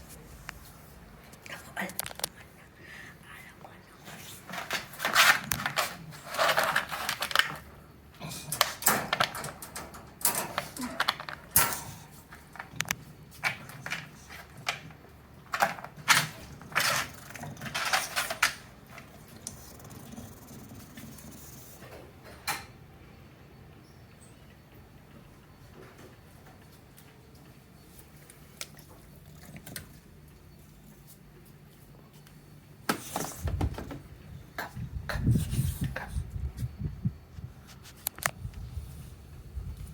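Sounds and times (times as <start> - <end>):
dog snoring: 19.5 - 21.8.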